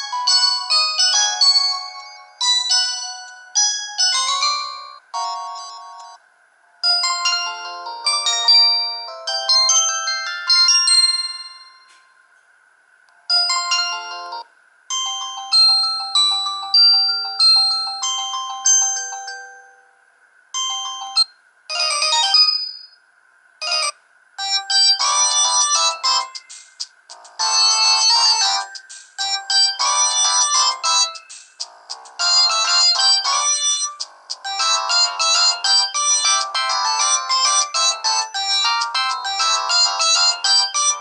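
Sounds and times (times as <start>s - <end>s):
mobile phone ringtones: 0.0s - 6.2s, 6.8s - 12.0s, 13.3s - 19.9s, 20.6s - 23.0s, 23.6s - 26.6s, 27.2s - 41.0s.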